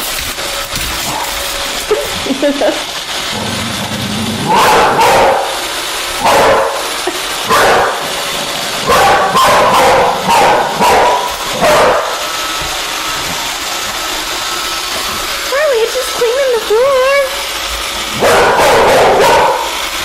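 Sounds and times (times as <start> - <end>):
dog barking: 1.1 - 1.4, 4.4 - 5.6, 6.2 - 6.9, 7.5 - 8.1, 8.8 - 12.2, 18.2 - 19.8.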